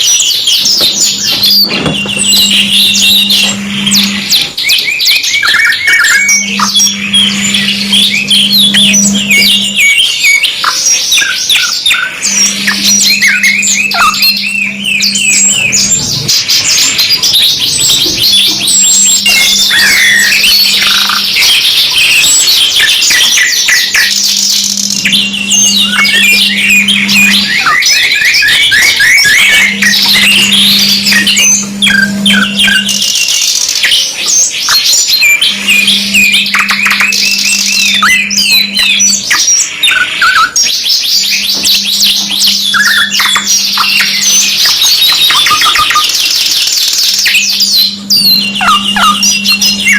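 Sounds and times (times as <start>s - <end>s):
canaries singing trills: 0.0s - 49.9s
low hum: 1.0s - 4.7s, 6.0s - 10.0s, 12.1s - 22.4s, 24.2s - 33.2s, 35.3s - 39.5s, 41.3s - 44.6s, 47.5s - 49.9s.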